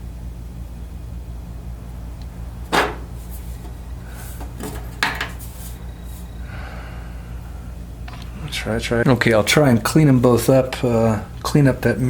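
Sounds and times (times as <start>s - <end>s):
steady low hum: 0.0s - 12.0s
metal tools clanking: 2.7s - 3.8s, 4.4s - 5.5s.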